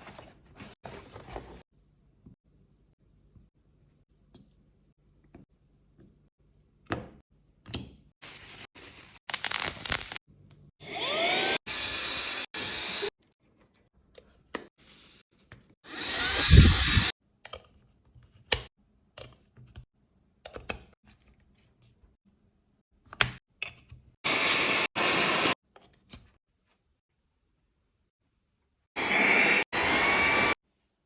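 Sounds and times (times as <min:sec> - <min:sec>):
blower-vacuum motor whining: 0:10.8 - 0:13.1, 0:15.9 - 0:17.1, 0:24.3 - 0:25.6, 0:29.0 - 0:30.6.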